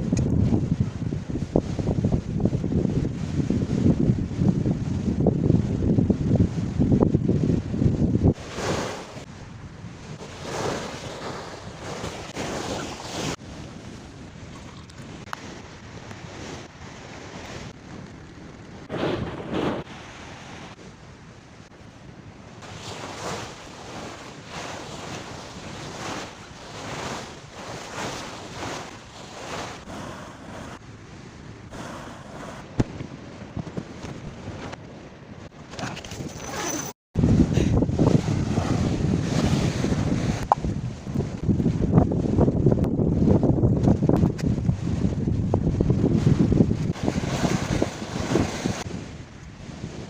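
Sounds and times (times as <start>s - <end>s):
wind buffeting microphone: 0.0s - 50.0s
sea waves surging onto shore: 8.3s - 17.8s, 18.8s - 32.8s, 37.2s - 41.1s, 44.6s - 50.0s.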